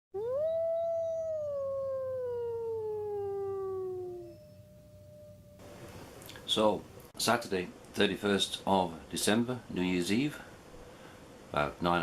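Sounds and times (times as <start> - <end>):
dog howling: 0.2 - 5.6.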